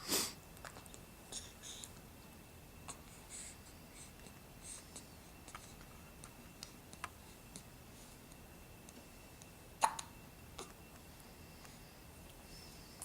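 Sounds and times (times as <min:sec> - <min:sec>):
baby hiccuping: 0:09.8 - 0:10.7.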